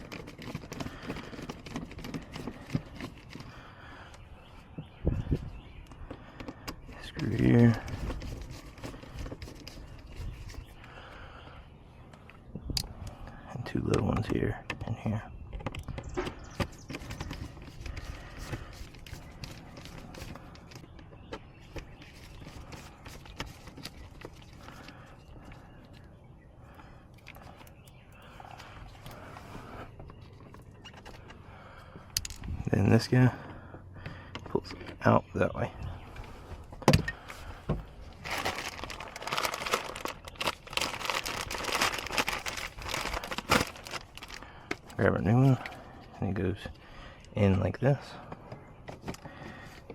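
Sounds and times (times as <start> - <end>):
plastic packaging crinkling: 38.1 - 44.9.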